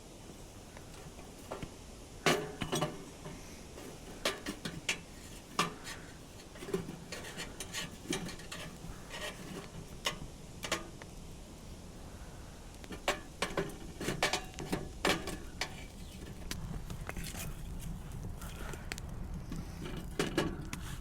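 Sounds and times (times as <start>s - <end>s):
faint steady hiss: 0.0s - 21.0s
metal cookware clinking: 2.2s - 3.1s.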